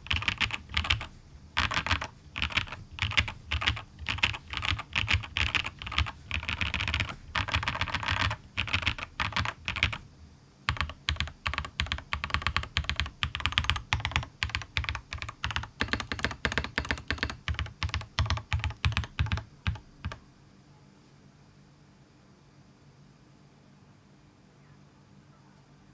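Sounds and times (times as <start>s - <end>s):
fast typing on mechanical keyboard: 0.0s - 10.1s, 10.7s - 20.2s.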